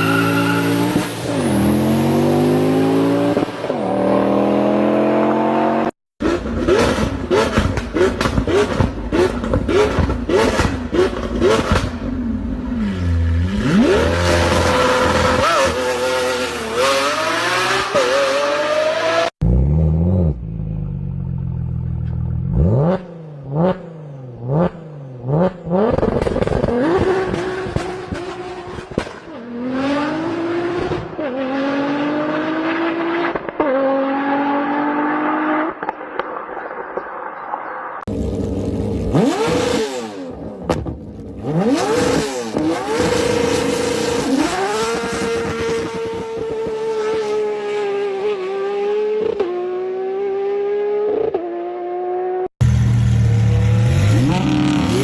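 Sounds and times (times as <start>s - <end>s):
car engine revving: 38.0s - 55.0s.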